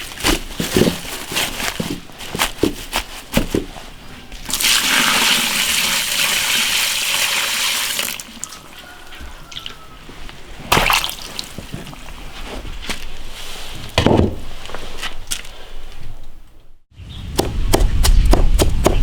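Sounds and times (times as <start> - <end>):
water running hard: 4.5 - 8.3.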